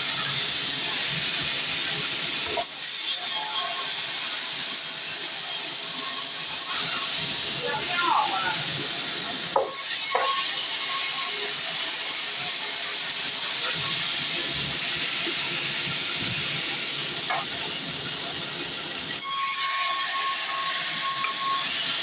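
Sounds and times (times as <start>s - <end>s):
bandsaw cutting through log: 9.4s - 15.4s.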